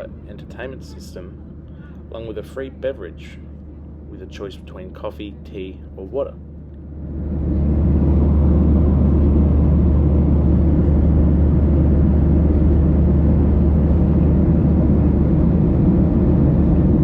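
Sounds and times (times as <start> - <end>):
airplane cabin engine rumble: 0.0 - 17.0.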